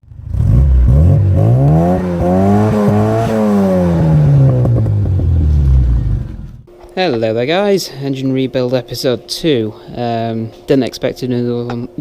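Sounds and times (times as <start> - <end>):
car engine revving: 0.0 - 6.7.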